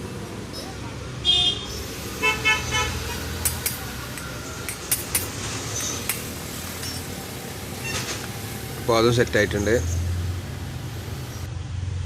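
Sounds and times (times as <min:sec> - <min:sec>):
sharp metal taps: 0:03.4 - 0:07.0.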